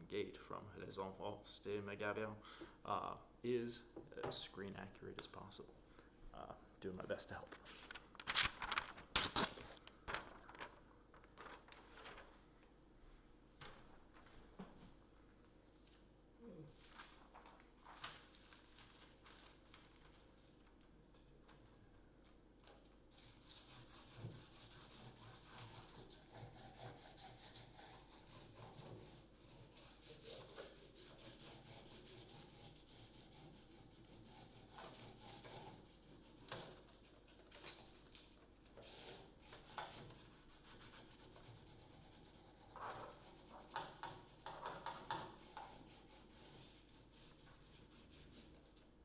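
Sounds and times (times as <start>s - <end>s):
pencil rubbing on paper: 23.1s - 37.1s, 38.8s - 48.8s.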